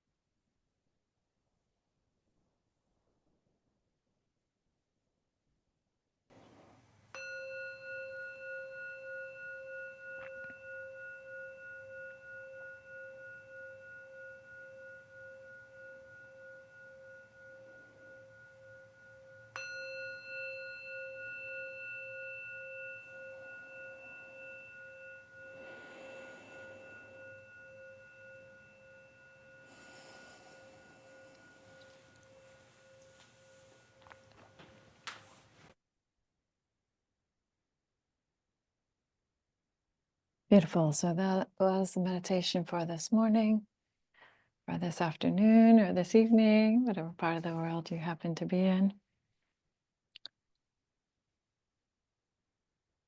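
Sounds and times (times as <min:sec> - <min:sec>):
singing bowl ringing: 0:07.1 - 0:34.9.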